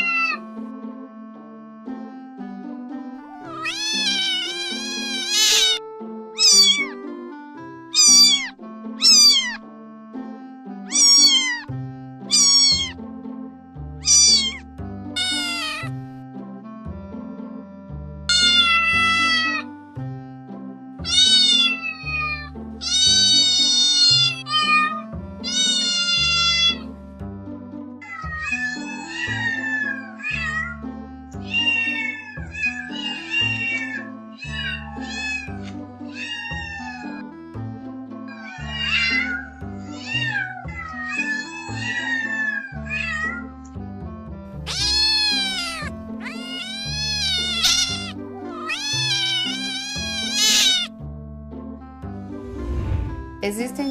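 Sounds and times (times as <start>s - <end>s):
cat meowing: 0.0s - 0.4s, 3.3s - 5.8s, 6.4s - 7.0s, 7.9s - 9.6s, 10.9s - 13.0s, 14.0s - 16.0s, 18.3s - 19.7s, 21.0s - 26.9s, 28.0s - 37.3s, 38.2s - 43.5s, 44.5s - 50.9s
background music: 0.0s - 53.9s.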